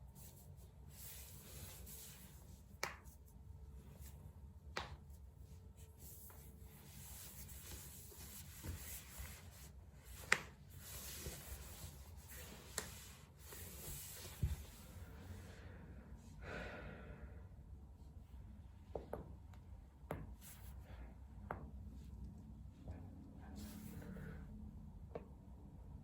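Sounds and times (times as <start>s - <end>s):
hands rubbing on clothing: 0.1s - 14.9s.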